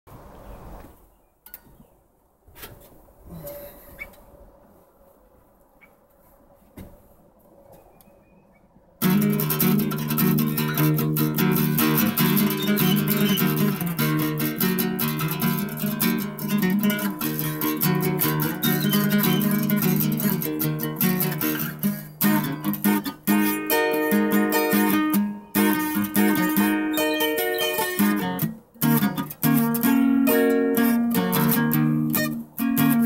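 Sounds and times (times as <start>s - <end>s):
music with strummed guitar: 9.0s - 33.0s.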